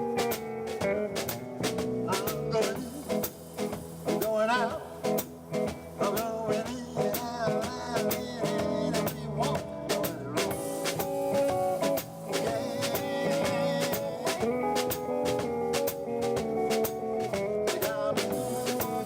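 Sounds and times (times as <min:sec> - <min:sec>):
drum kit hits: 0:00.0 - 0:19.0
guitar with bending notes: 0:00.0 - 0:19.0.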